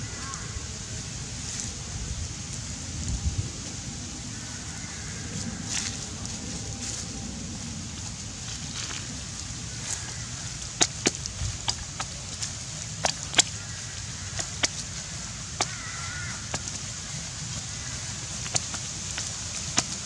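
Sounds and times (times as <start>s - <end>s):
steady low rumble: 0.0s - 15.6s.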